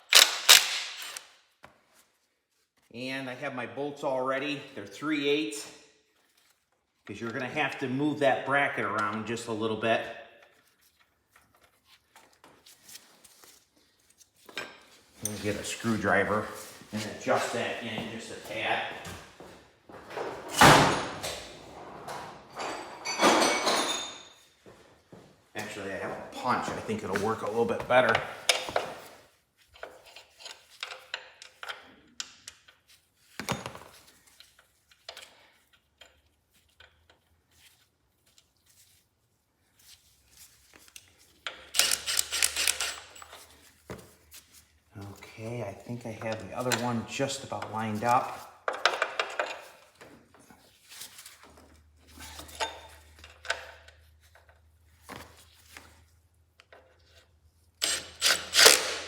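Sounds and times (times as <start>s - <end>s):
metal tools and bolts clicking: 41.5s - 43.5s.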